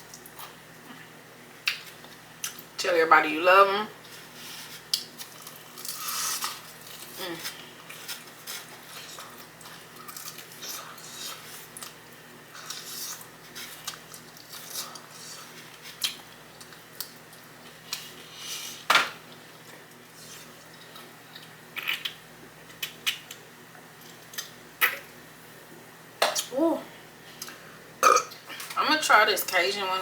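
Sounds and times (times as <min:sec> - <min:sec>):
chewing and mouth smacks: 0:19.4 - 0:23.4.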